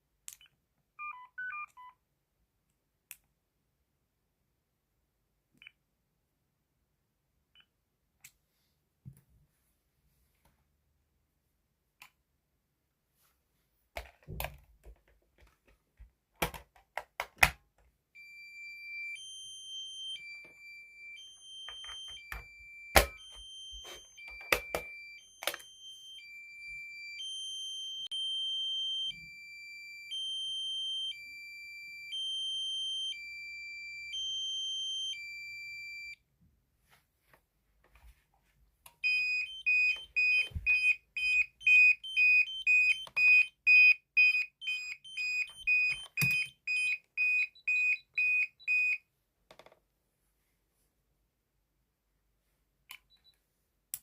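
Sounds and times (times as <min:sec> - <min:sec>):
two-tone electronic alarm: 0:18.2 - 0:36.2, 0:39.0 - 0:49.0.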